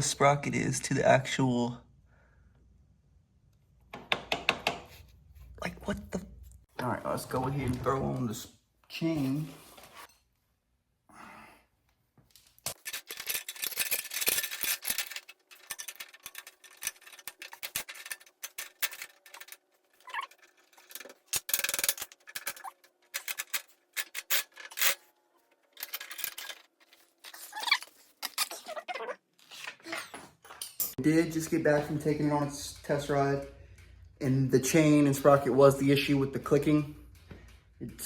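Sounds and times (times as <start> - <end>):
metal chain rattling and clinking: 12.7 - 25.1.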